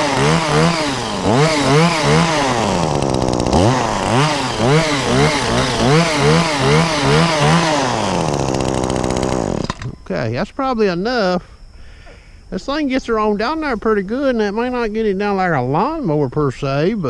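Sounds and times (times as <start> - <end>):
hedge trimmer engine revving: 0.0 - 10.1.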